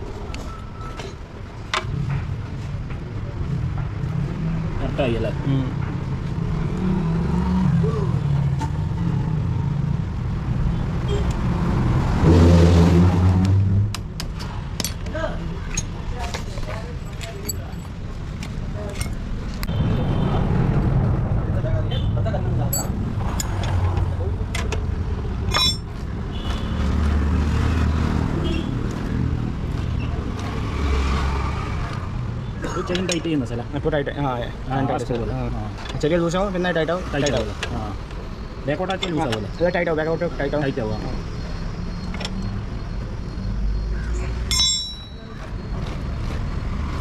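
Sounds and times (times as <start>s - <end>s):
vehicle engine humming: 20.8s - 47.0s.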